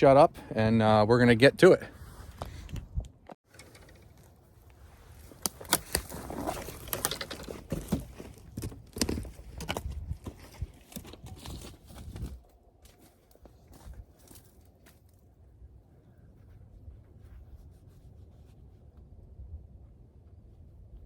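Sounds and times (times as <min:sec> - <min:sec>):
footsteps on leaves and twigs: 0:04.7 - 0:15.3.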